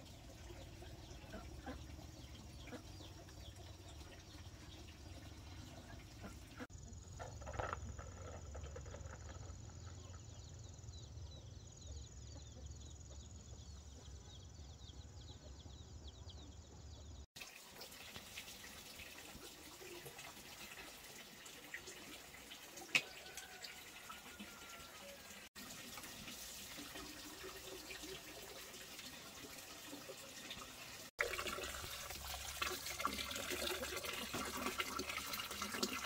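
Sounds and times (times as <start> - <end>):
water trickling and dripping: 0.0 - 6.7, 17.4 - 36.0.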